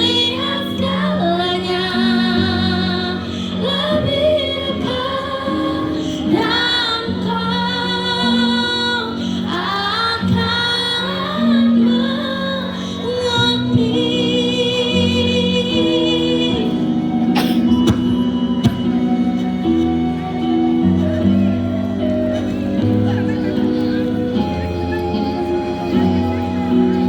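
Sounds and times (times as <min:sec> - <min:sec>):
choir singing long notes: 0:00.0 - 0:12.4
instrumental accompaniment: 0:13.8 - 0:27.0.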